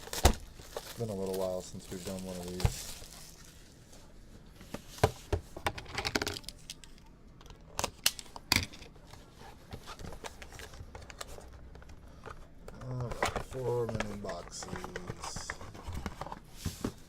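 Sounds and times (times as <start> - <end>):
plastic wrap crinkling and tearing: 0.0 - 3.7.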